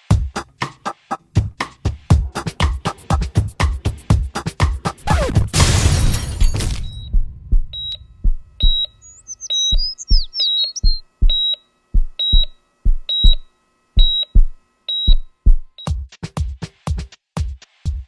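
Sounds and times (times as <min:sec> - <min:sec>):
high electronic beep: 0:06.7 - 0:11.6, 0:12.2 - 0:13.4, 0:14.0 - 0:15.9
deep low thumps: 0:06.8 - 0:13.4, 0:14.0 - 0:15.8
quick gliding chirps: 0:07.7 - 0:11.6.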